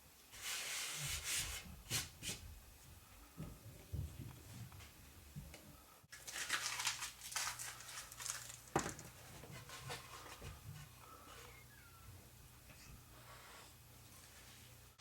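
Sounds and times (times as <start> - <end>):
material crinkling and rustling: 6.1 - 10.5.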